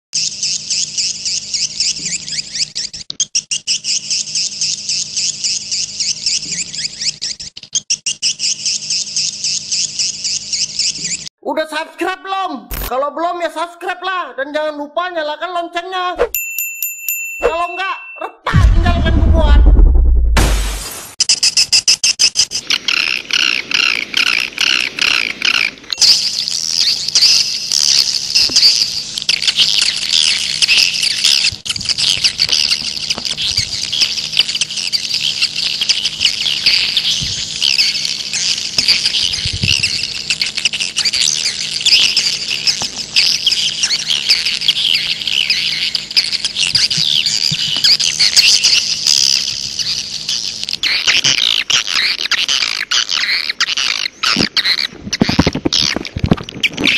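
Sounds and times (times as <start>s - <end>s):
swiftlets twittering and chirping: 0.2s - 11.3s, 21.2s - 56.9s
evenly repeated bird call: 21.4s - 54.9s.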